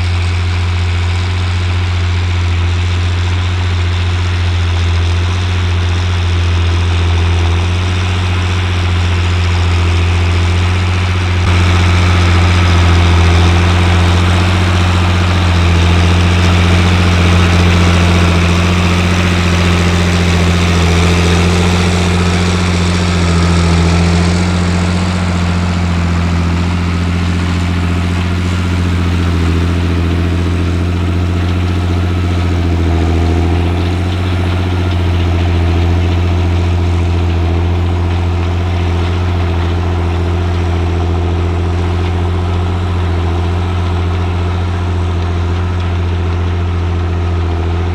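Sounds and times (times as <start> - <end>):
tractor diesel engine droning: 0.0 - 47.9.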